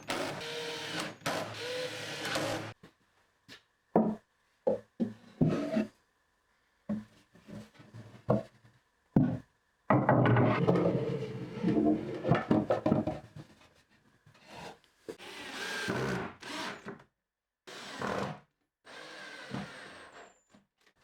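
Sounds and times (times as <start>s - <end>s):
wooden parts rubbing and sliding: 10.4s - 13.0s.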